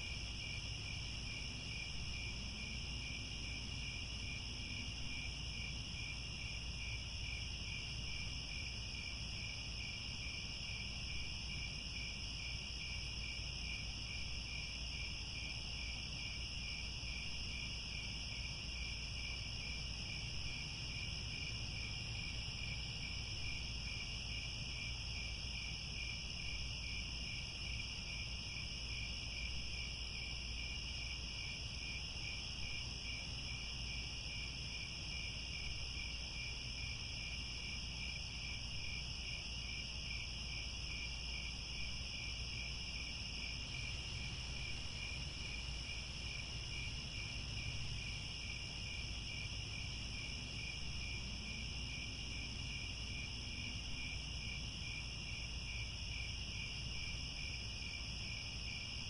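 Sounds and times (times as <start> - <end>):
crickets chirping: 0.0 - 59.0.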